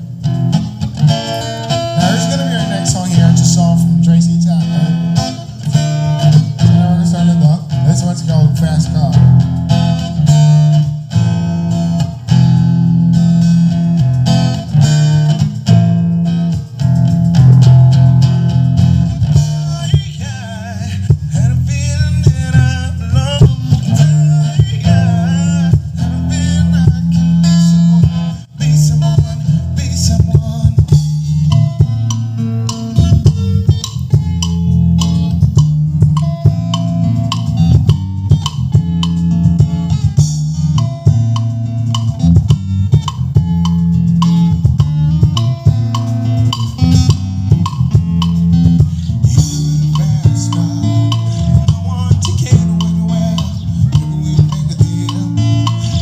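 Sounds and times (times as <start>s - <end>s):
guitar music with heavy bass: 0.0s - 56.0s
person singing: 2.0s - 9.5s, 19.3s - 34.0s, 48.6s - 56.0s.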